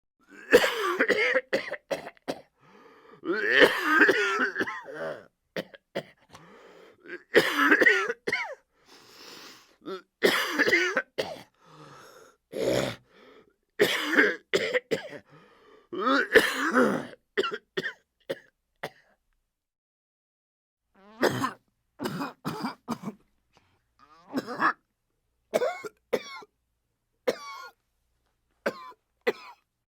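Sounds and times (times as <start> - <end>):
person coughing and clearing throat: 0.3 - 2.6, 3.2 - 6.4, 7.0 - 8.6, 9.8 - 11.6, 12.6 - 13.0, 13.8 - 15.3, 16.0 - 19.1, 21.2 - 23.2, 24.3 - 24.8, 25.5 - 26.5, 27.3 - 27.8, 28.7 - 29.6.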